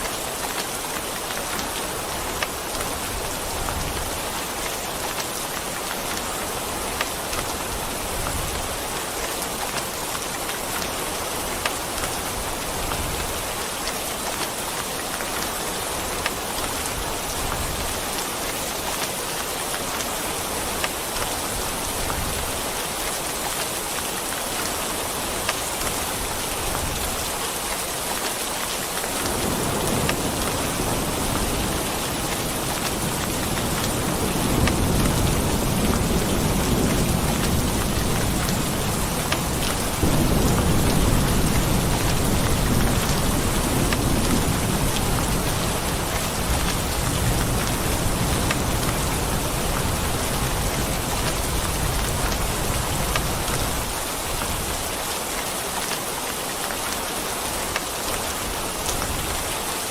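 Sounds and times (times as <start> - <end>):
heavy rain falling: 0.0 - 59.9
low rumble of thunder: 29.2 - 54.8.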